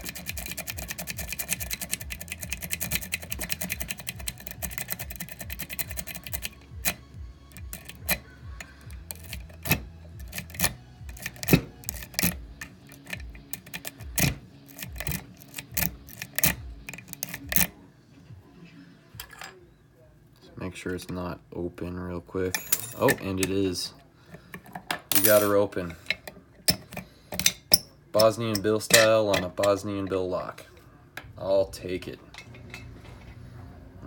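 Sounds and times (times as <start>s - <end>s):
lock pick clicking in padlock: 0.0s - 17.7s.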